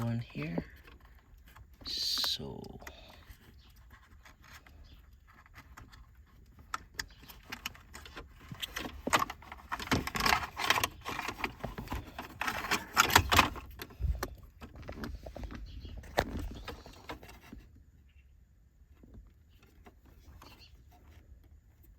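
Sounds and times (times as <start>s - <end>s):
plastic clicks and rattling: 2.7s - 17.4s.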